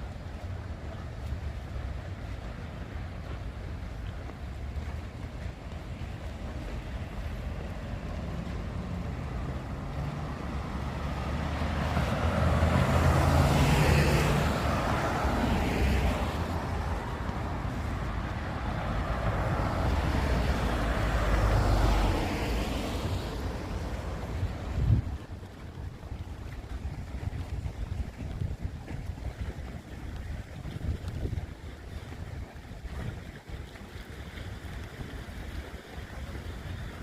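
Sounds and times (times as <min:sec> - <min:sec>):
road vehicles passing: 0:00.0 - 0:27.8.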